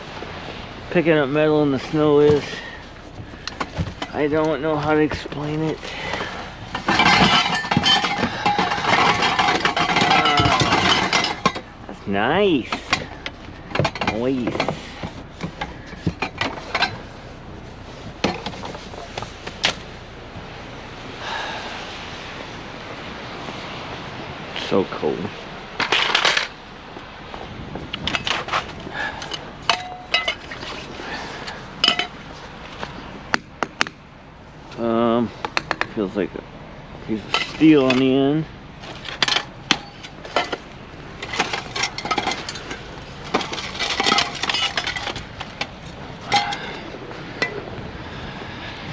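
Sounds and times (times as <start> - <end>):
scrap metal clattering: 0.0 - 20.0, 25.8 - 26.6, 28.0 - 33.9, 37.1 - 48.9.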